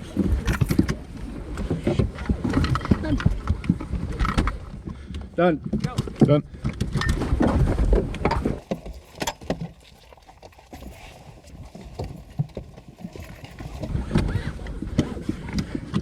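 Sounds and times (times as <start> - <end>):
people shifting in car seats: 6.8 - 16.0.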